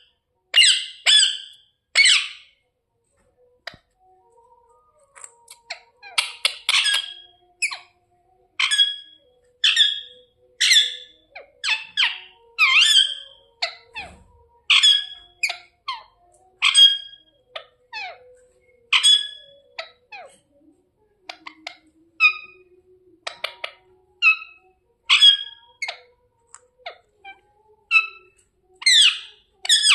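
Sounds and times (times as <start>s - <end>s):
parrot squawking: 0.5s - 2.6s, 5.2s - 7.9s, 8.6s - 18.2s, 18.9s - 20.4s, 21.3s - 26.1s, 26.8s - 29.9s.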